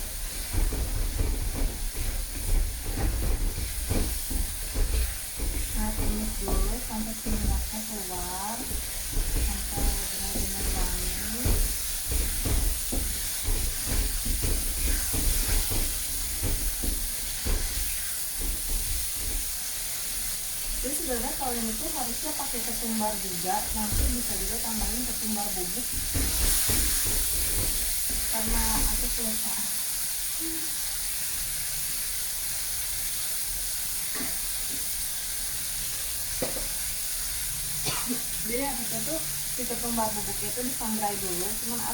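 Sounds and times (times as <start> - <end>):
faint knocks: 0.0 - 19.6
short stirring strokes: 0.0 - 29.5
spice paste sizzling in oil: 0.0 - 41.9.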